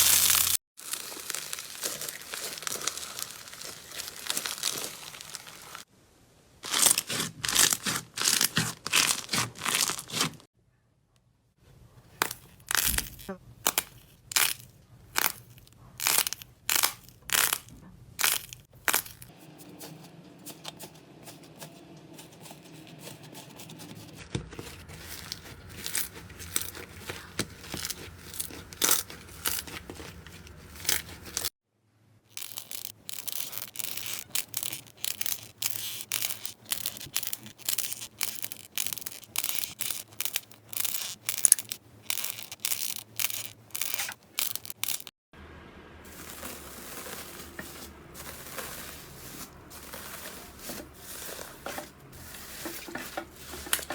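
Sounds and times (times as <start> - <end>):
slime crackling and popping: 0.0 - 5.9, 6.6 - 10.4, 15.2 - 19.3, 25.0 - 31.5, 32.3 - 45.1.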